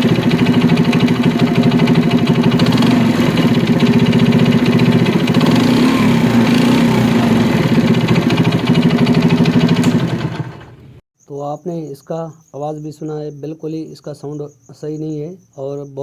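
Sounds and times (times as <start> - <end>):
motorcycle engine knocking rattle: 0.0 - 11.0.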